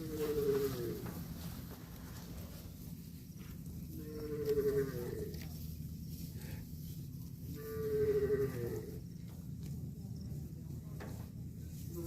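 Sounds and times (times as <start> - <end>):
cow mooing: 0.0 - 1.2, 3.9 - 5.4, 7.5 - 9.0.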